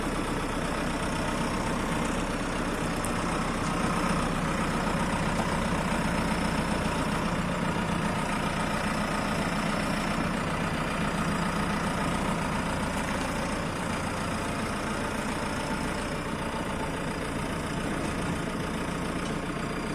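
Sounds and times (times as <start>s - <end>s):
diesel engine idling: 0.0s - 19.9s.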